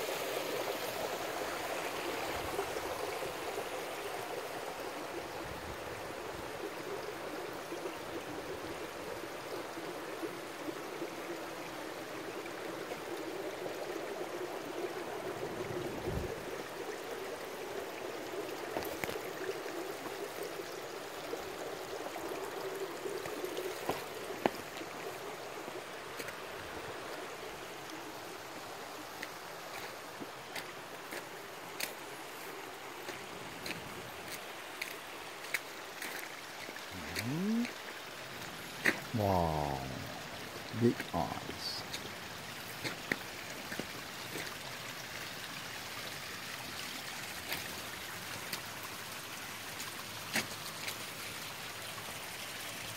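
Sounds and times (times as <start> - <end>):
stream running over rocks: 0.0 - 52.9
sharp water ticks: 16.9 - 26.5, 27.5 - 39.1, 40.0 - 46.2, 46.8 - 51.6.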